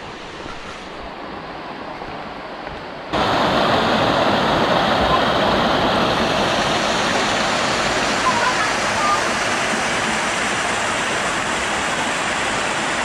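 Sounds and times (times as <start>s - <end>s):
waterfall rushing: 3.1s - 13.0s.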